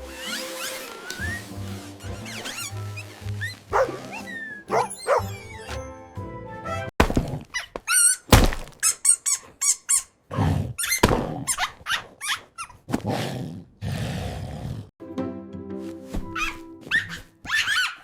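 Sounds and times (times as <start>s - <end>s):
high wavering squeaks: 0.0s - 5.8s
cartoon knocks and thuds: 7.0s - 7.4s.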